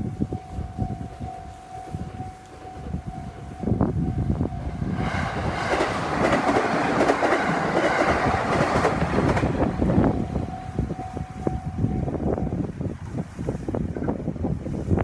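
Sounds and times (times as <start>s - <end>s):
crossing warning signal tone: 0.0s - 6.4s, 7.8s - 12.7s
train rumble: 0.0s - 15.0s
train wheels clacking over rail joints: 4.9s - 10.2s.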